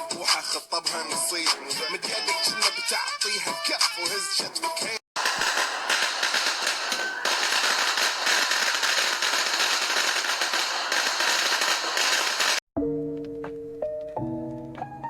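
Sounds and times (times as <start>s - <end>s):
firecrackers popping: 5.2s - 12.6s.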